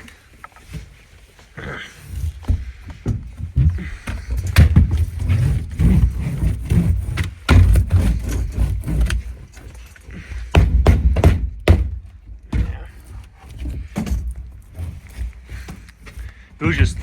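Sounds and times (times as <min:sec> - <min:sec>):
knocks and thumps on metal: 0:10.5 - 0:12.9.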